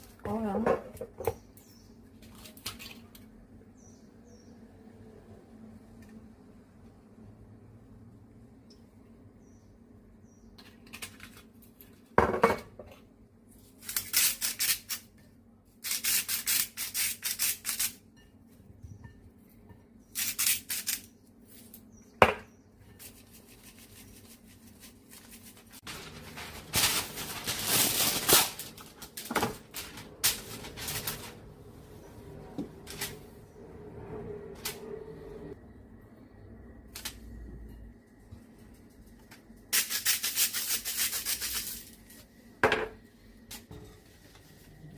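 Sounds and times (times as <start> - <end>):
rustling and clatter: 24.0 - 31.5.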